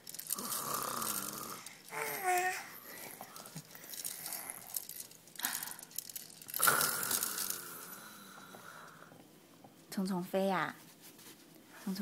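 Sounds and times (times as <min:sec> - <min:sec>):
toddler imitating snoring: 0:00.3 - 0:02.8, 0:06.6 - 0:08.4.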